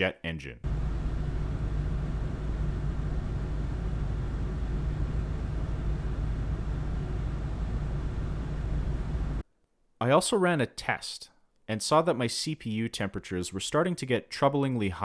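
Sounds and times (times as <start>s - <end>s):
cooling fan rushing loudly: 0.6s - 9.4s.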